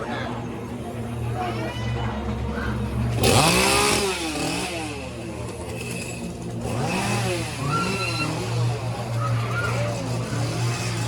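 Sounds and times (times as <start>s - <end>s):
small engine revving: 3.1s - 11.0s.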